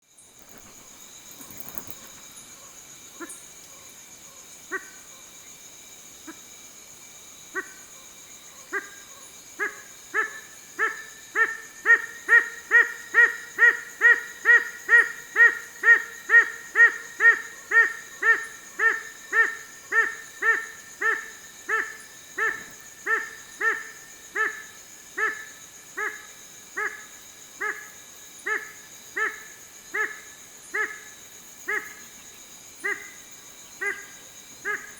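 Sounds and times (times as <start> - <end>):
high insect buzz: 0.0 - 34.9
owl barking calls: 8.6 - 24.6.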